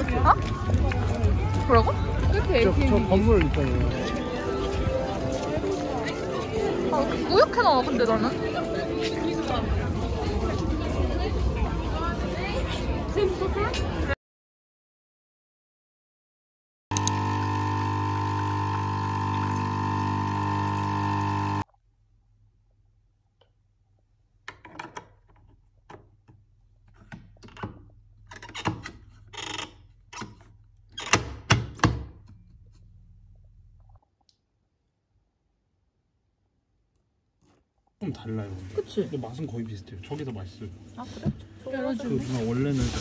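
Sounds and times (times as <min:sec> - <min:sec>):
loud electric hum: 0:16.9 - 0:21.6.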